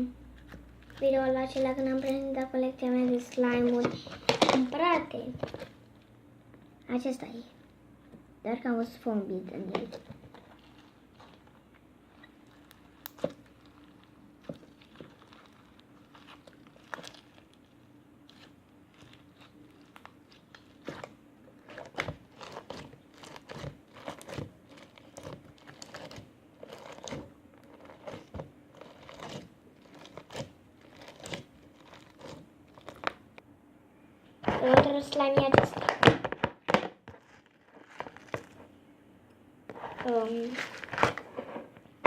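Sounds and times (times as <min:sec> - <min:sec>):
foam-bead slime crunching: 0:00.0 - 0:06.0, 0:09.4 - 0:33.3, 0:39.8 - 0:41.4.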